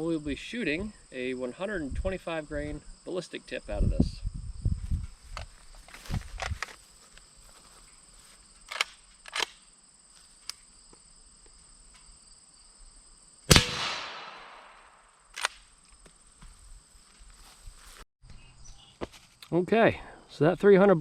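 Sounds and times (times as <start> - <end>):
suppressed rifle shot: 13.5 - 15.6.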